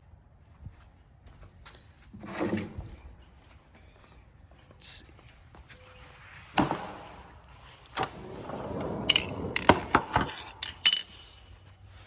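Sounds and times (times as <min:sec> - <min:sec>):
metal hand tools clinking: 0:09.1 - 0:11.7.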